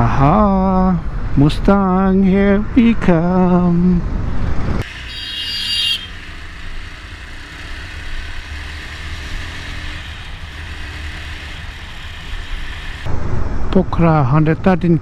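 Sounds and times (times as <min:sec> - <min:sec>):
motorcycle engine and road rumble: 0:00.0 - 0:13.8
high-pitched horn beep: 0:05.0 - 0:06.2.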